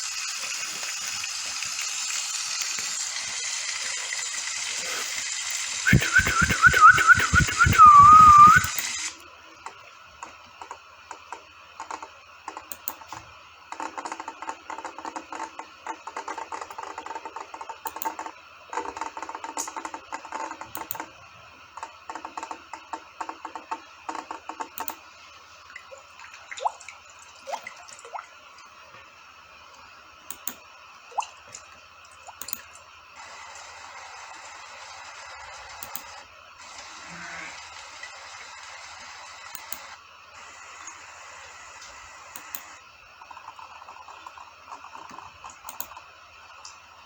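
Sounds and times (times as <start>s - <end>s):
rain drops dripping on hard surface: 0.0s - 4.8s, 43.2s - 47.0s.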